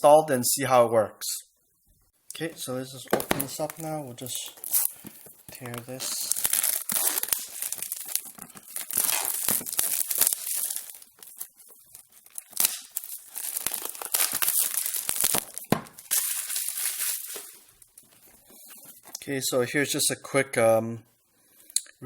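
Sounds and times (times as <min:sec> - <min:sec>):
packaging being torn and crinkled: 0:03.2 - 0:19.2.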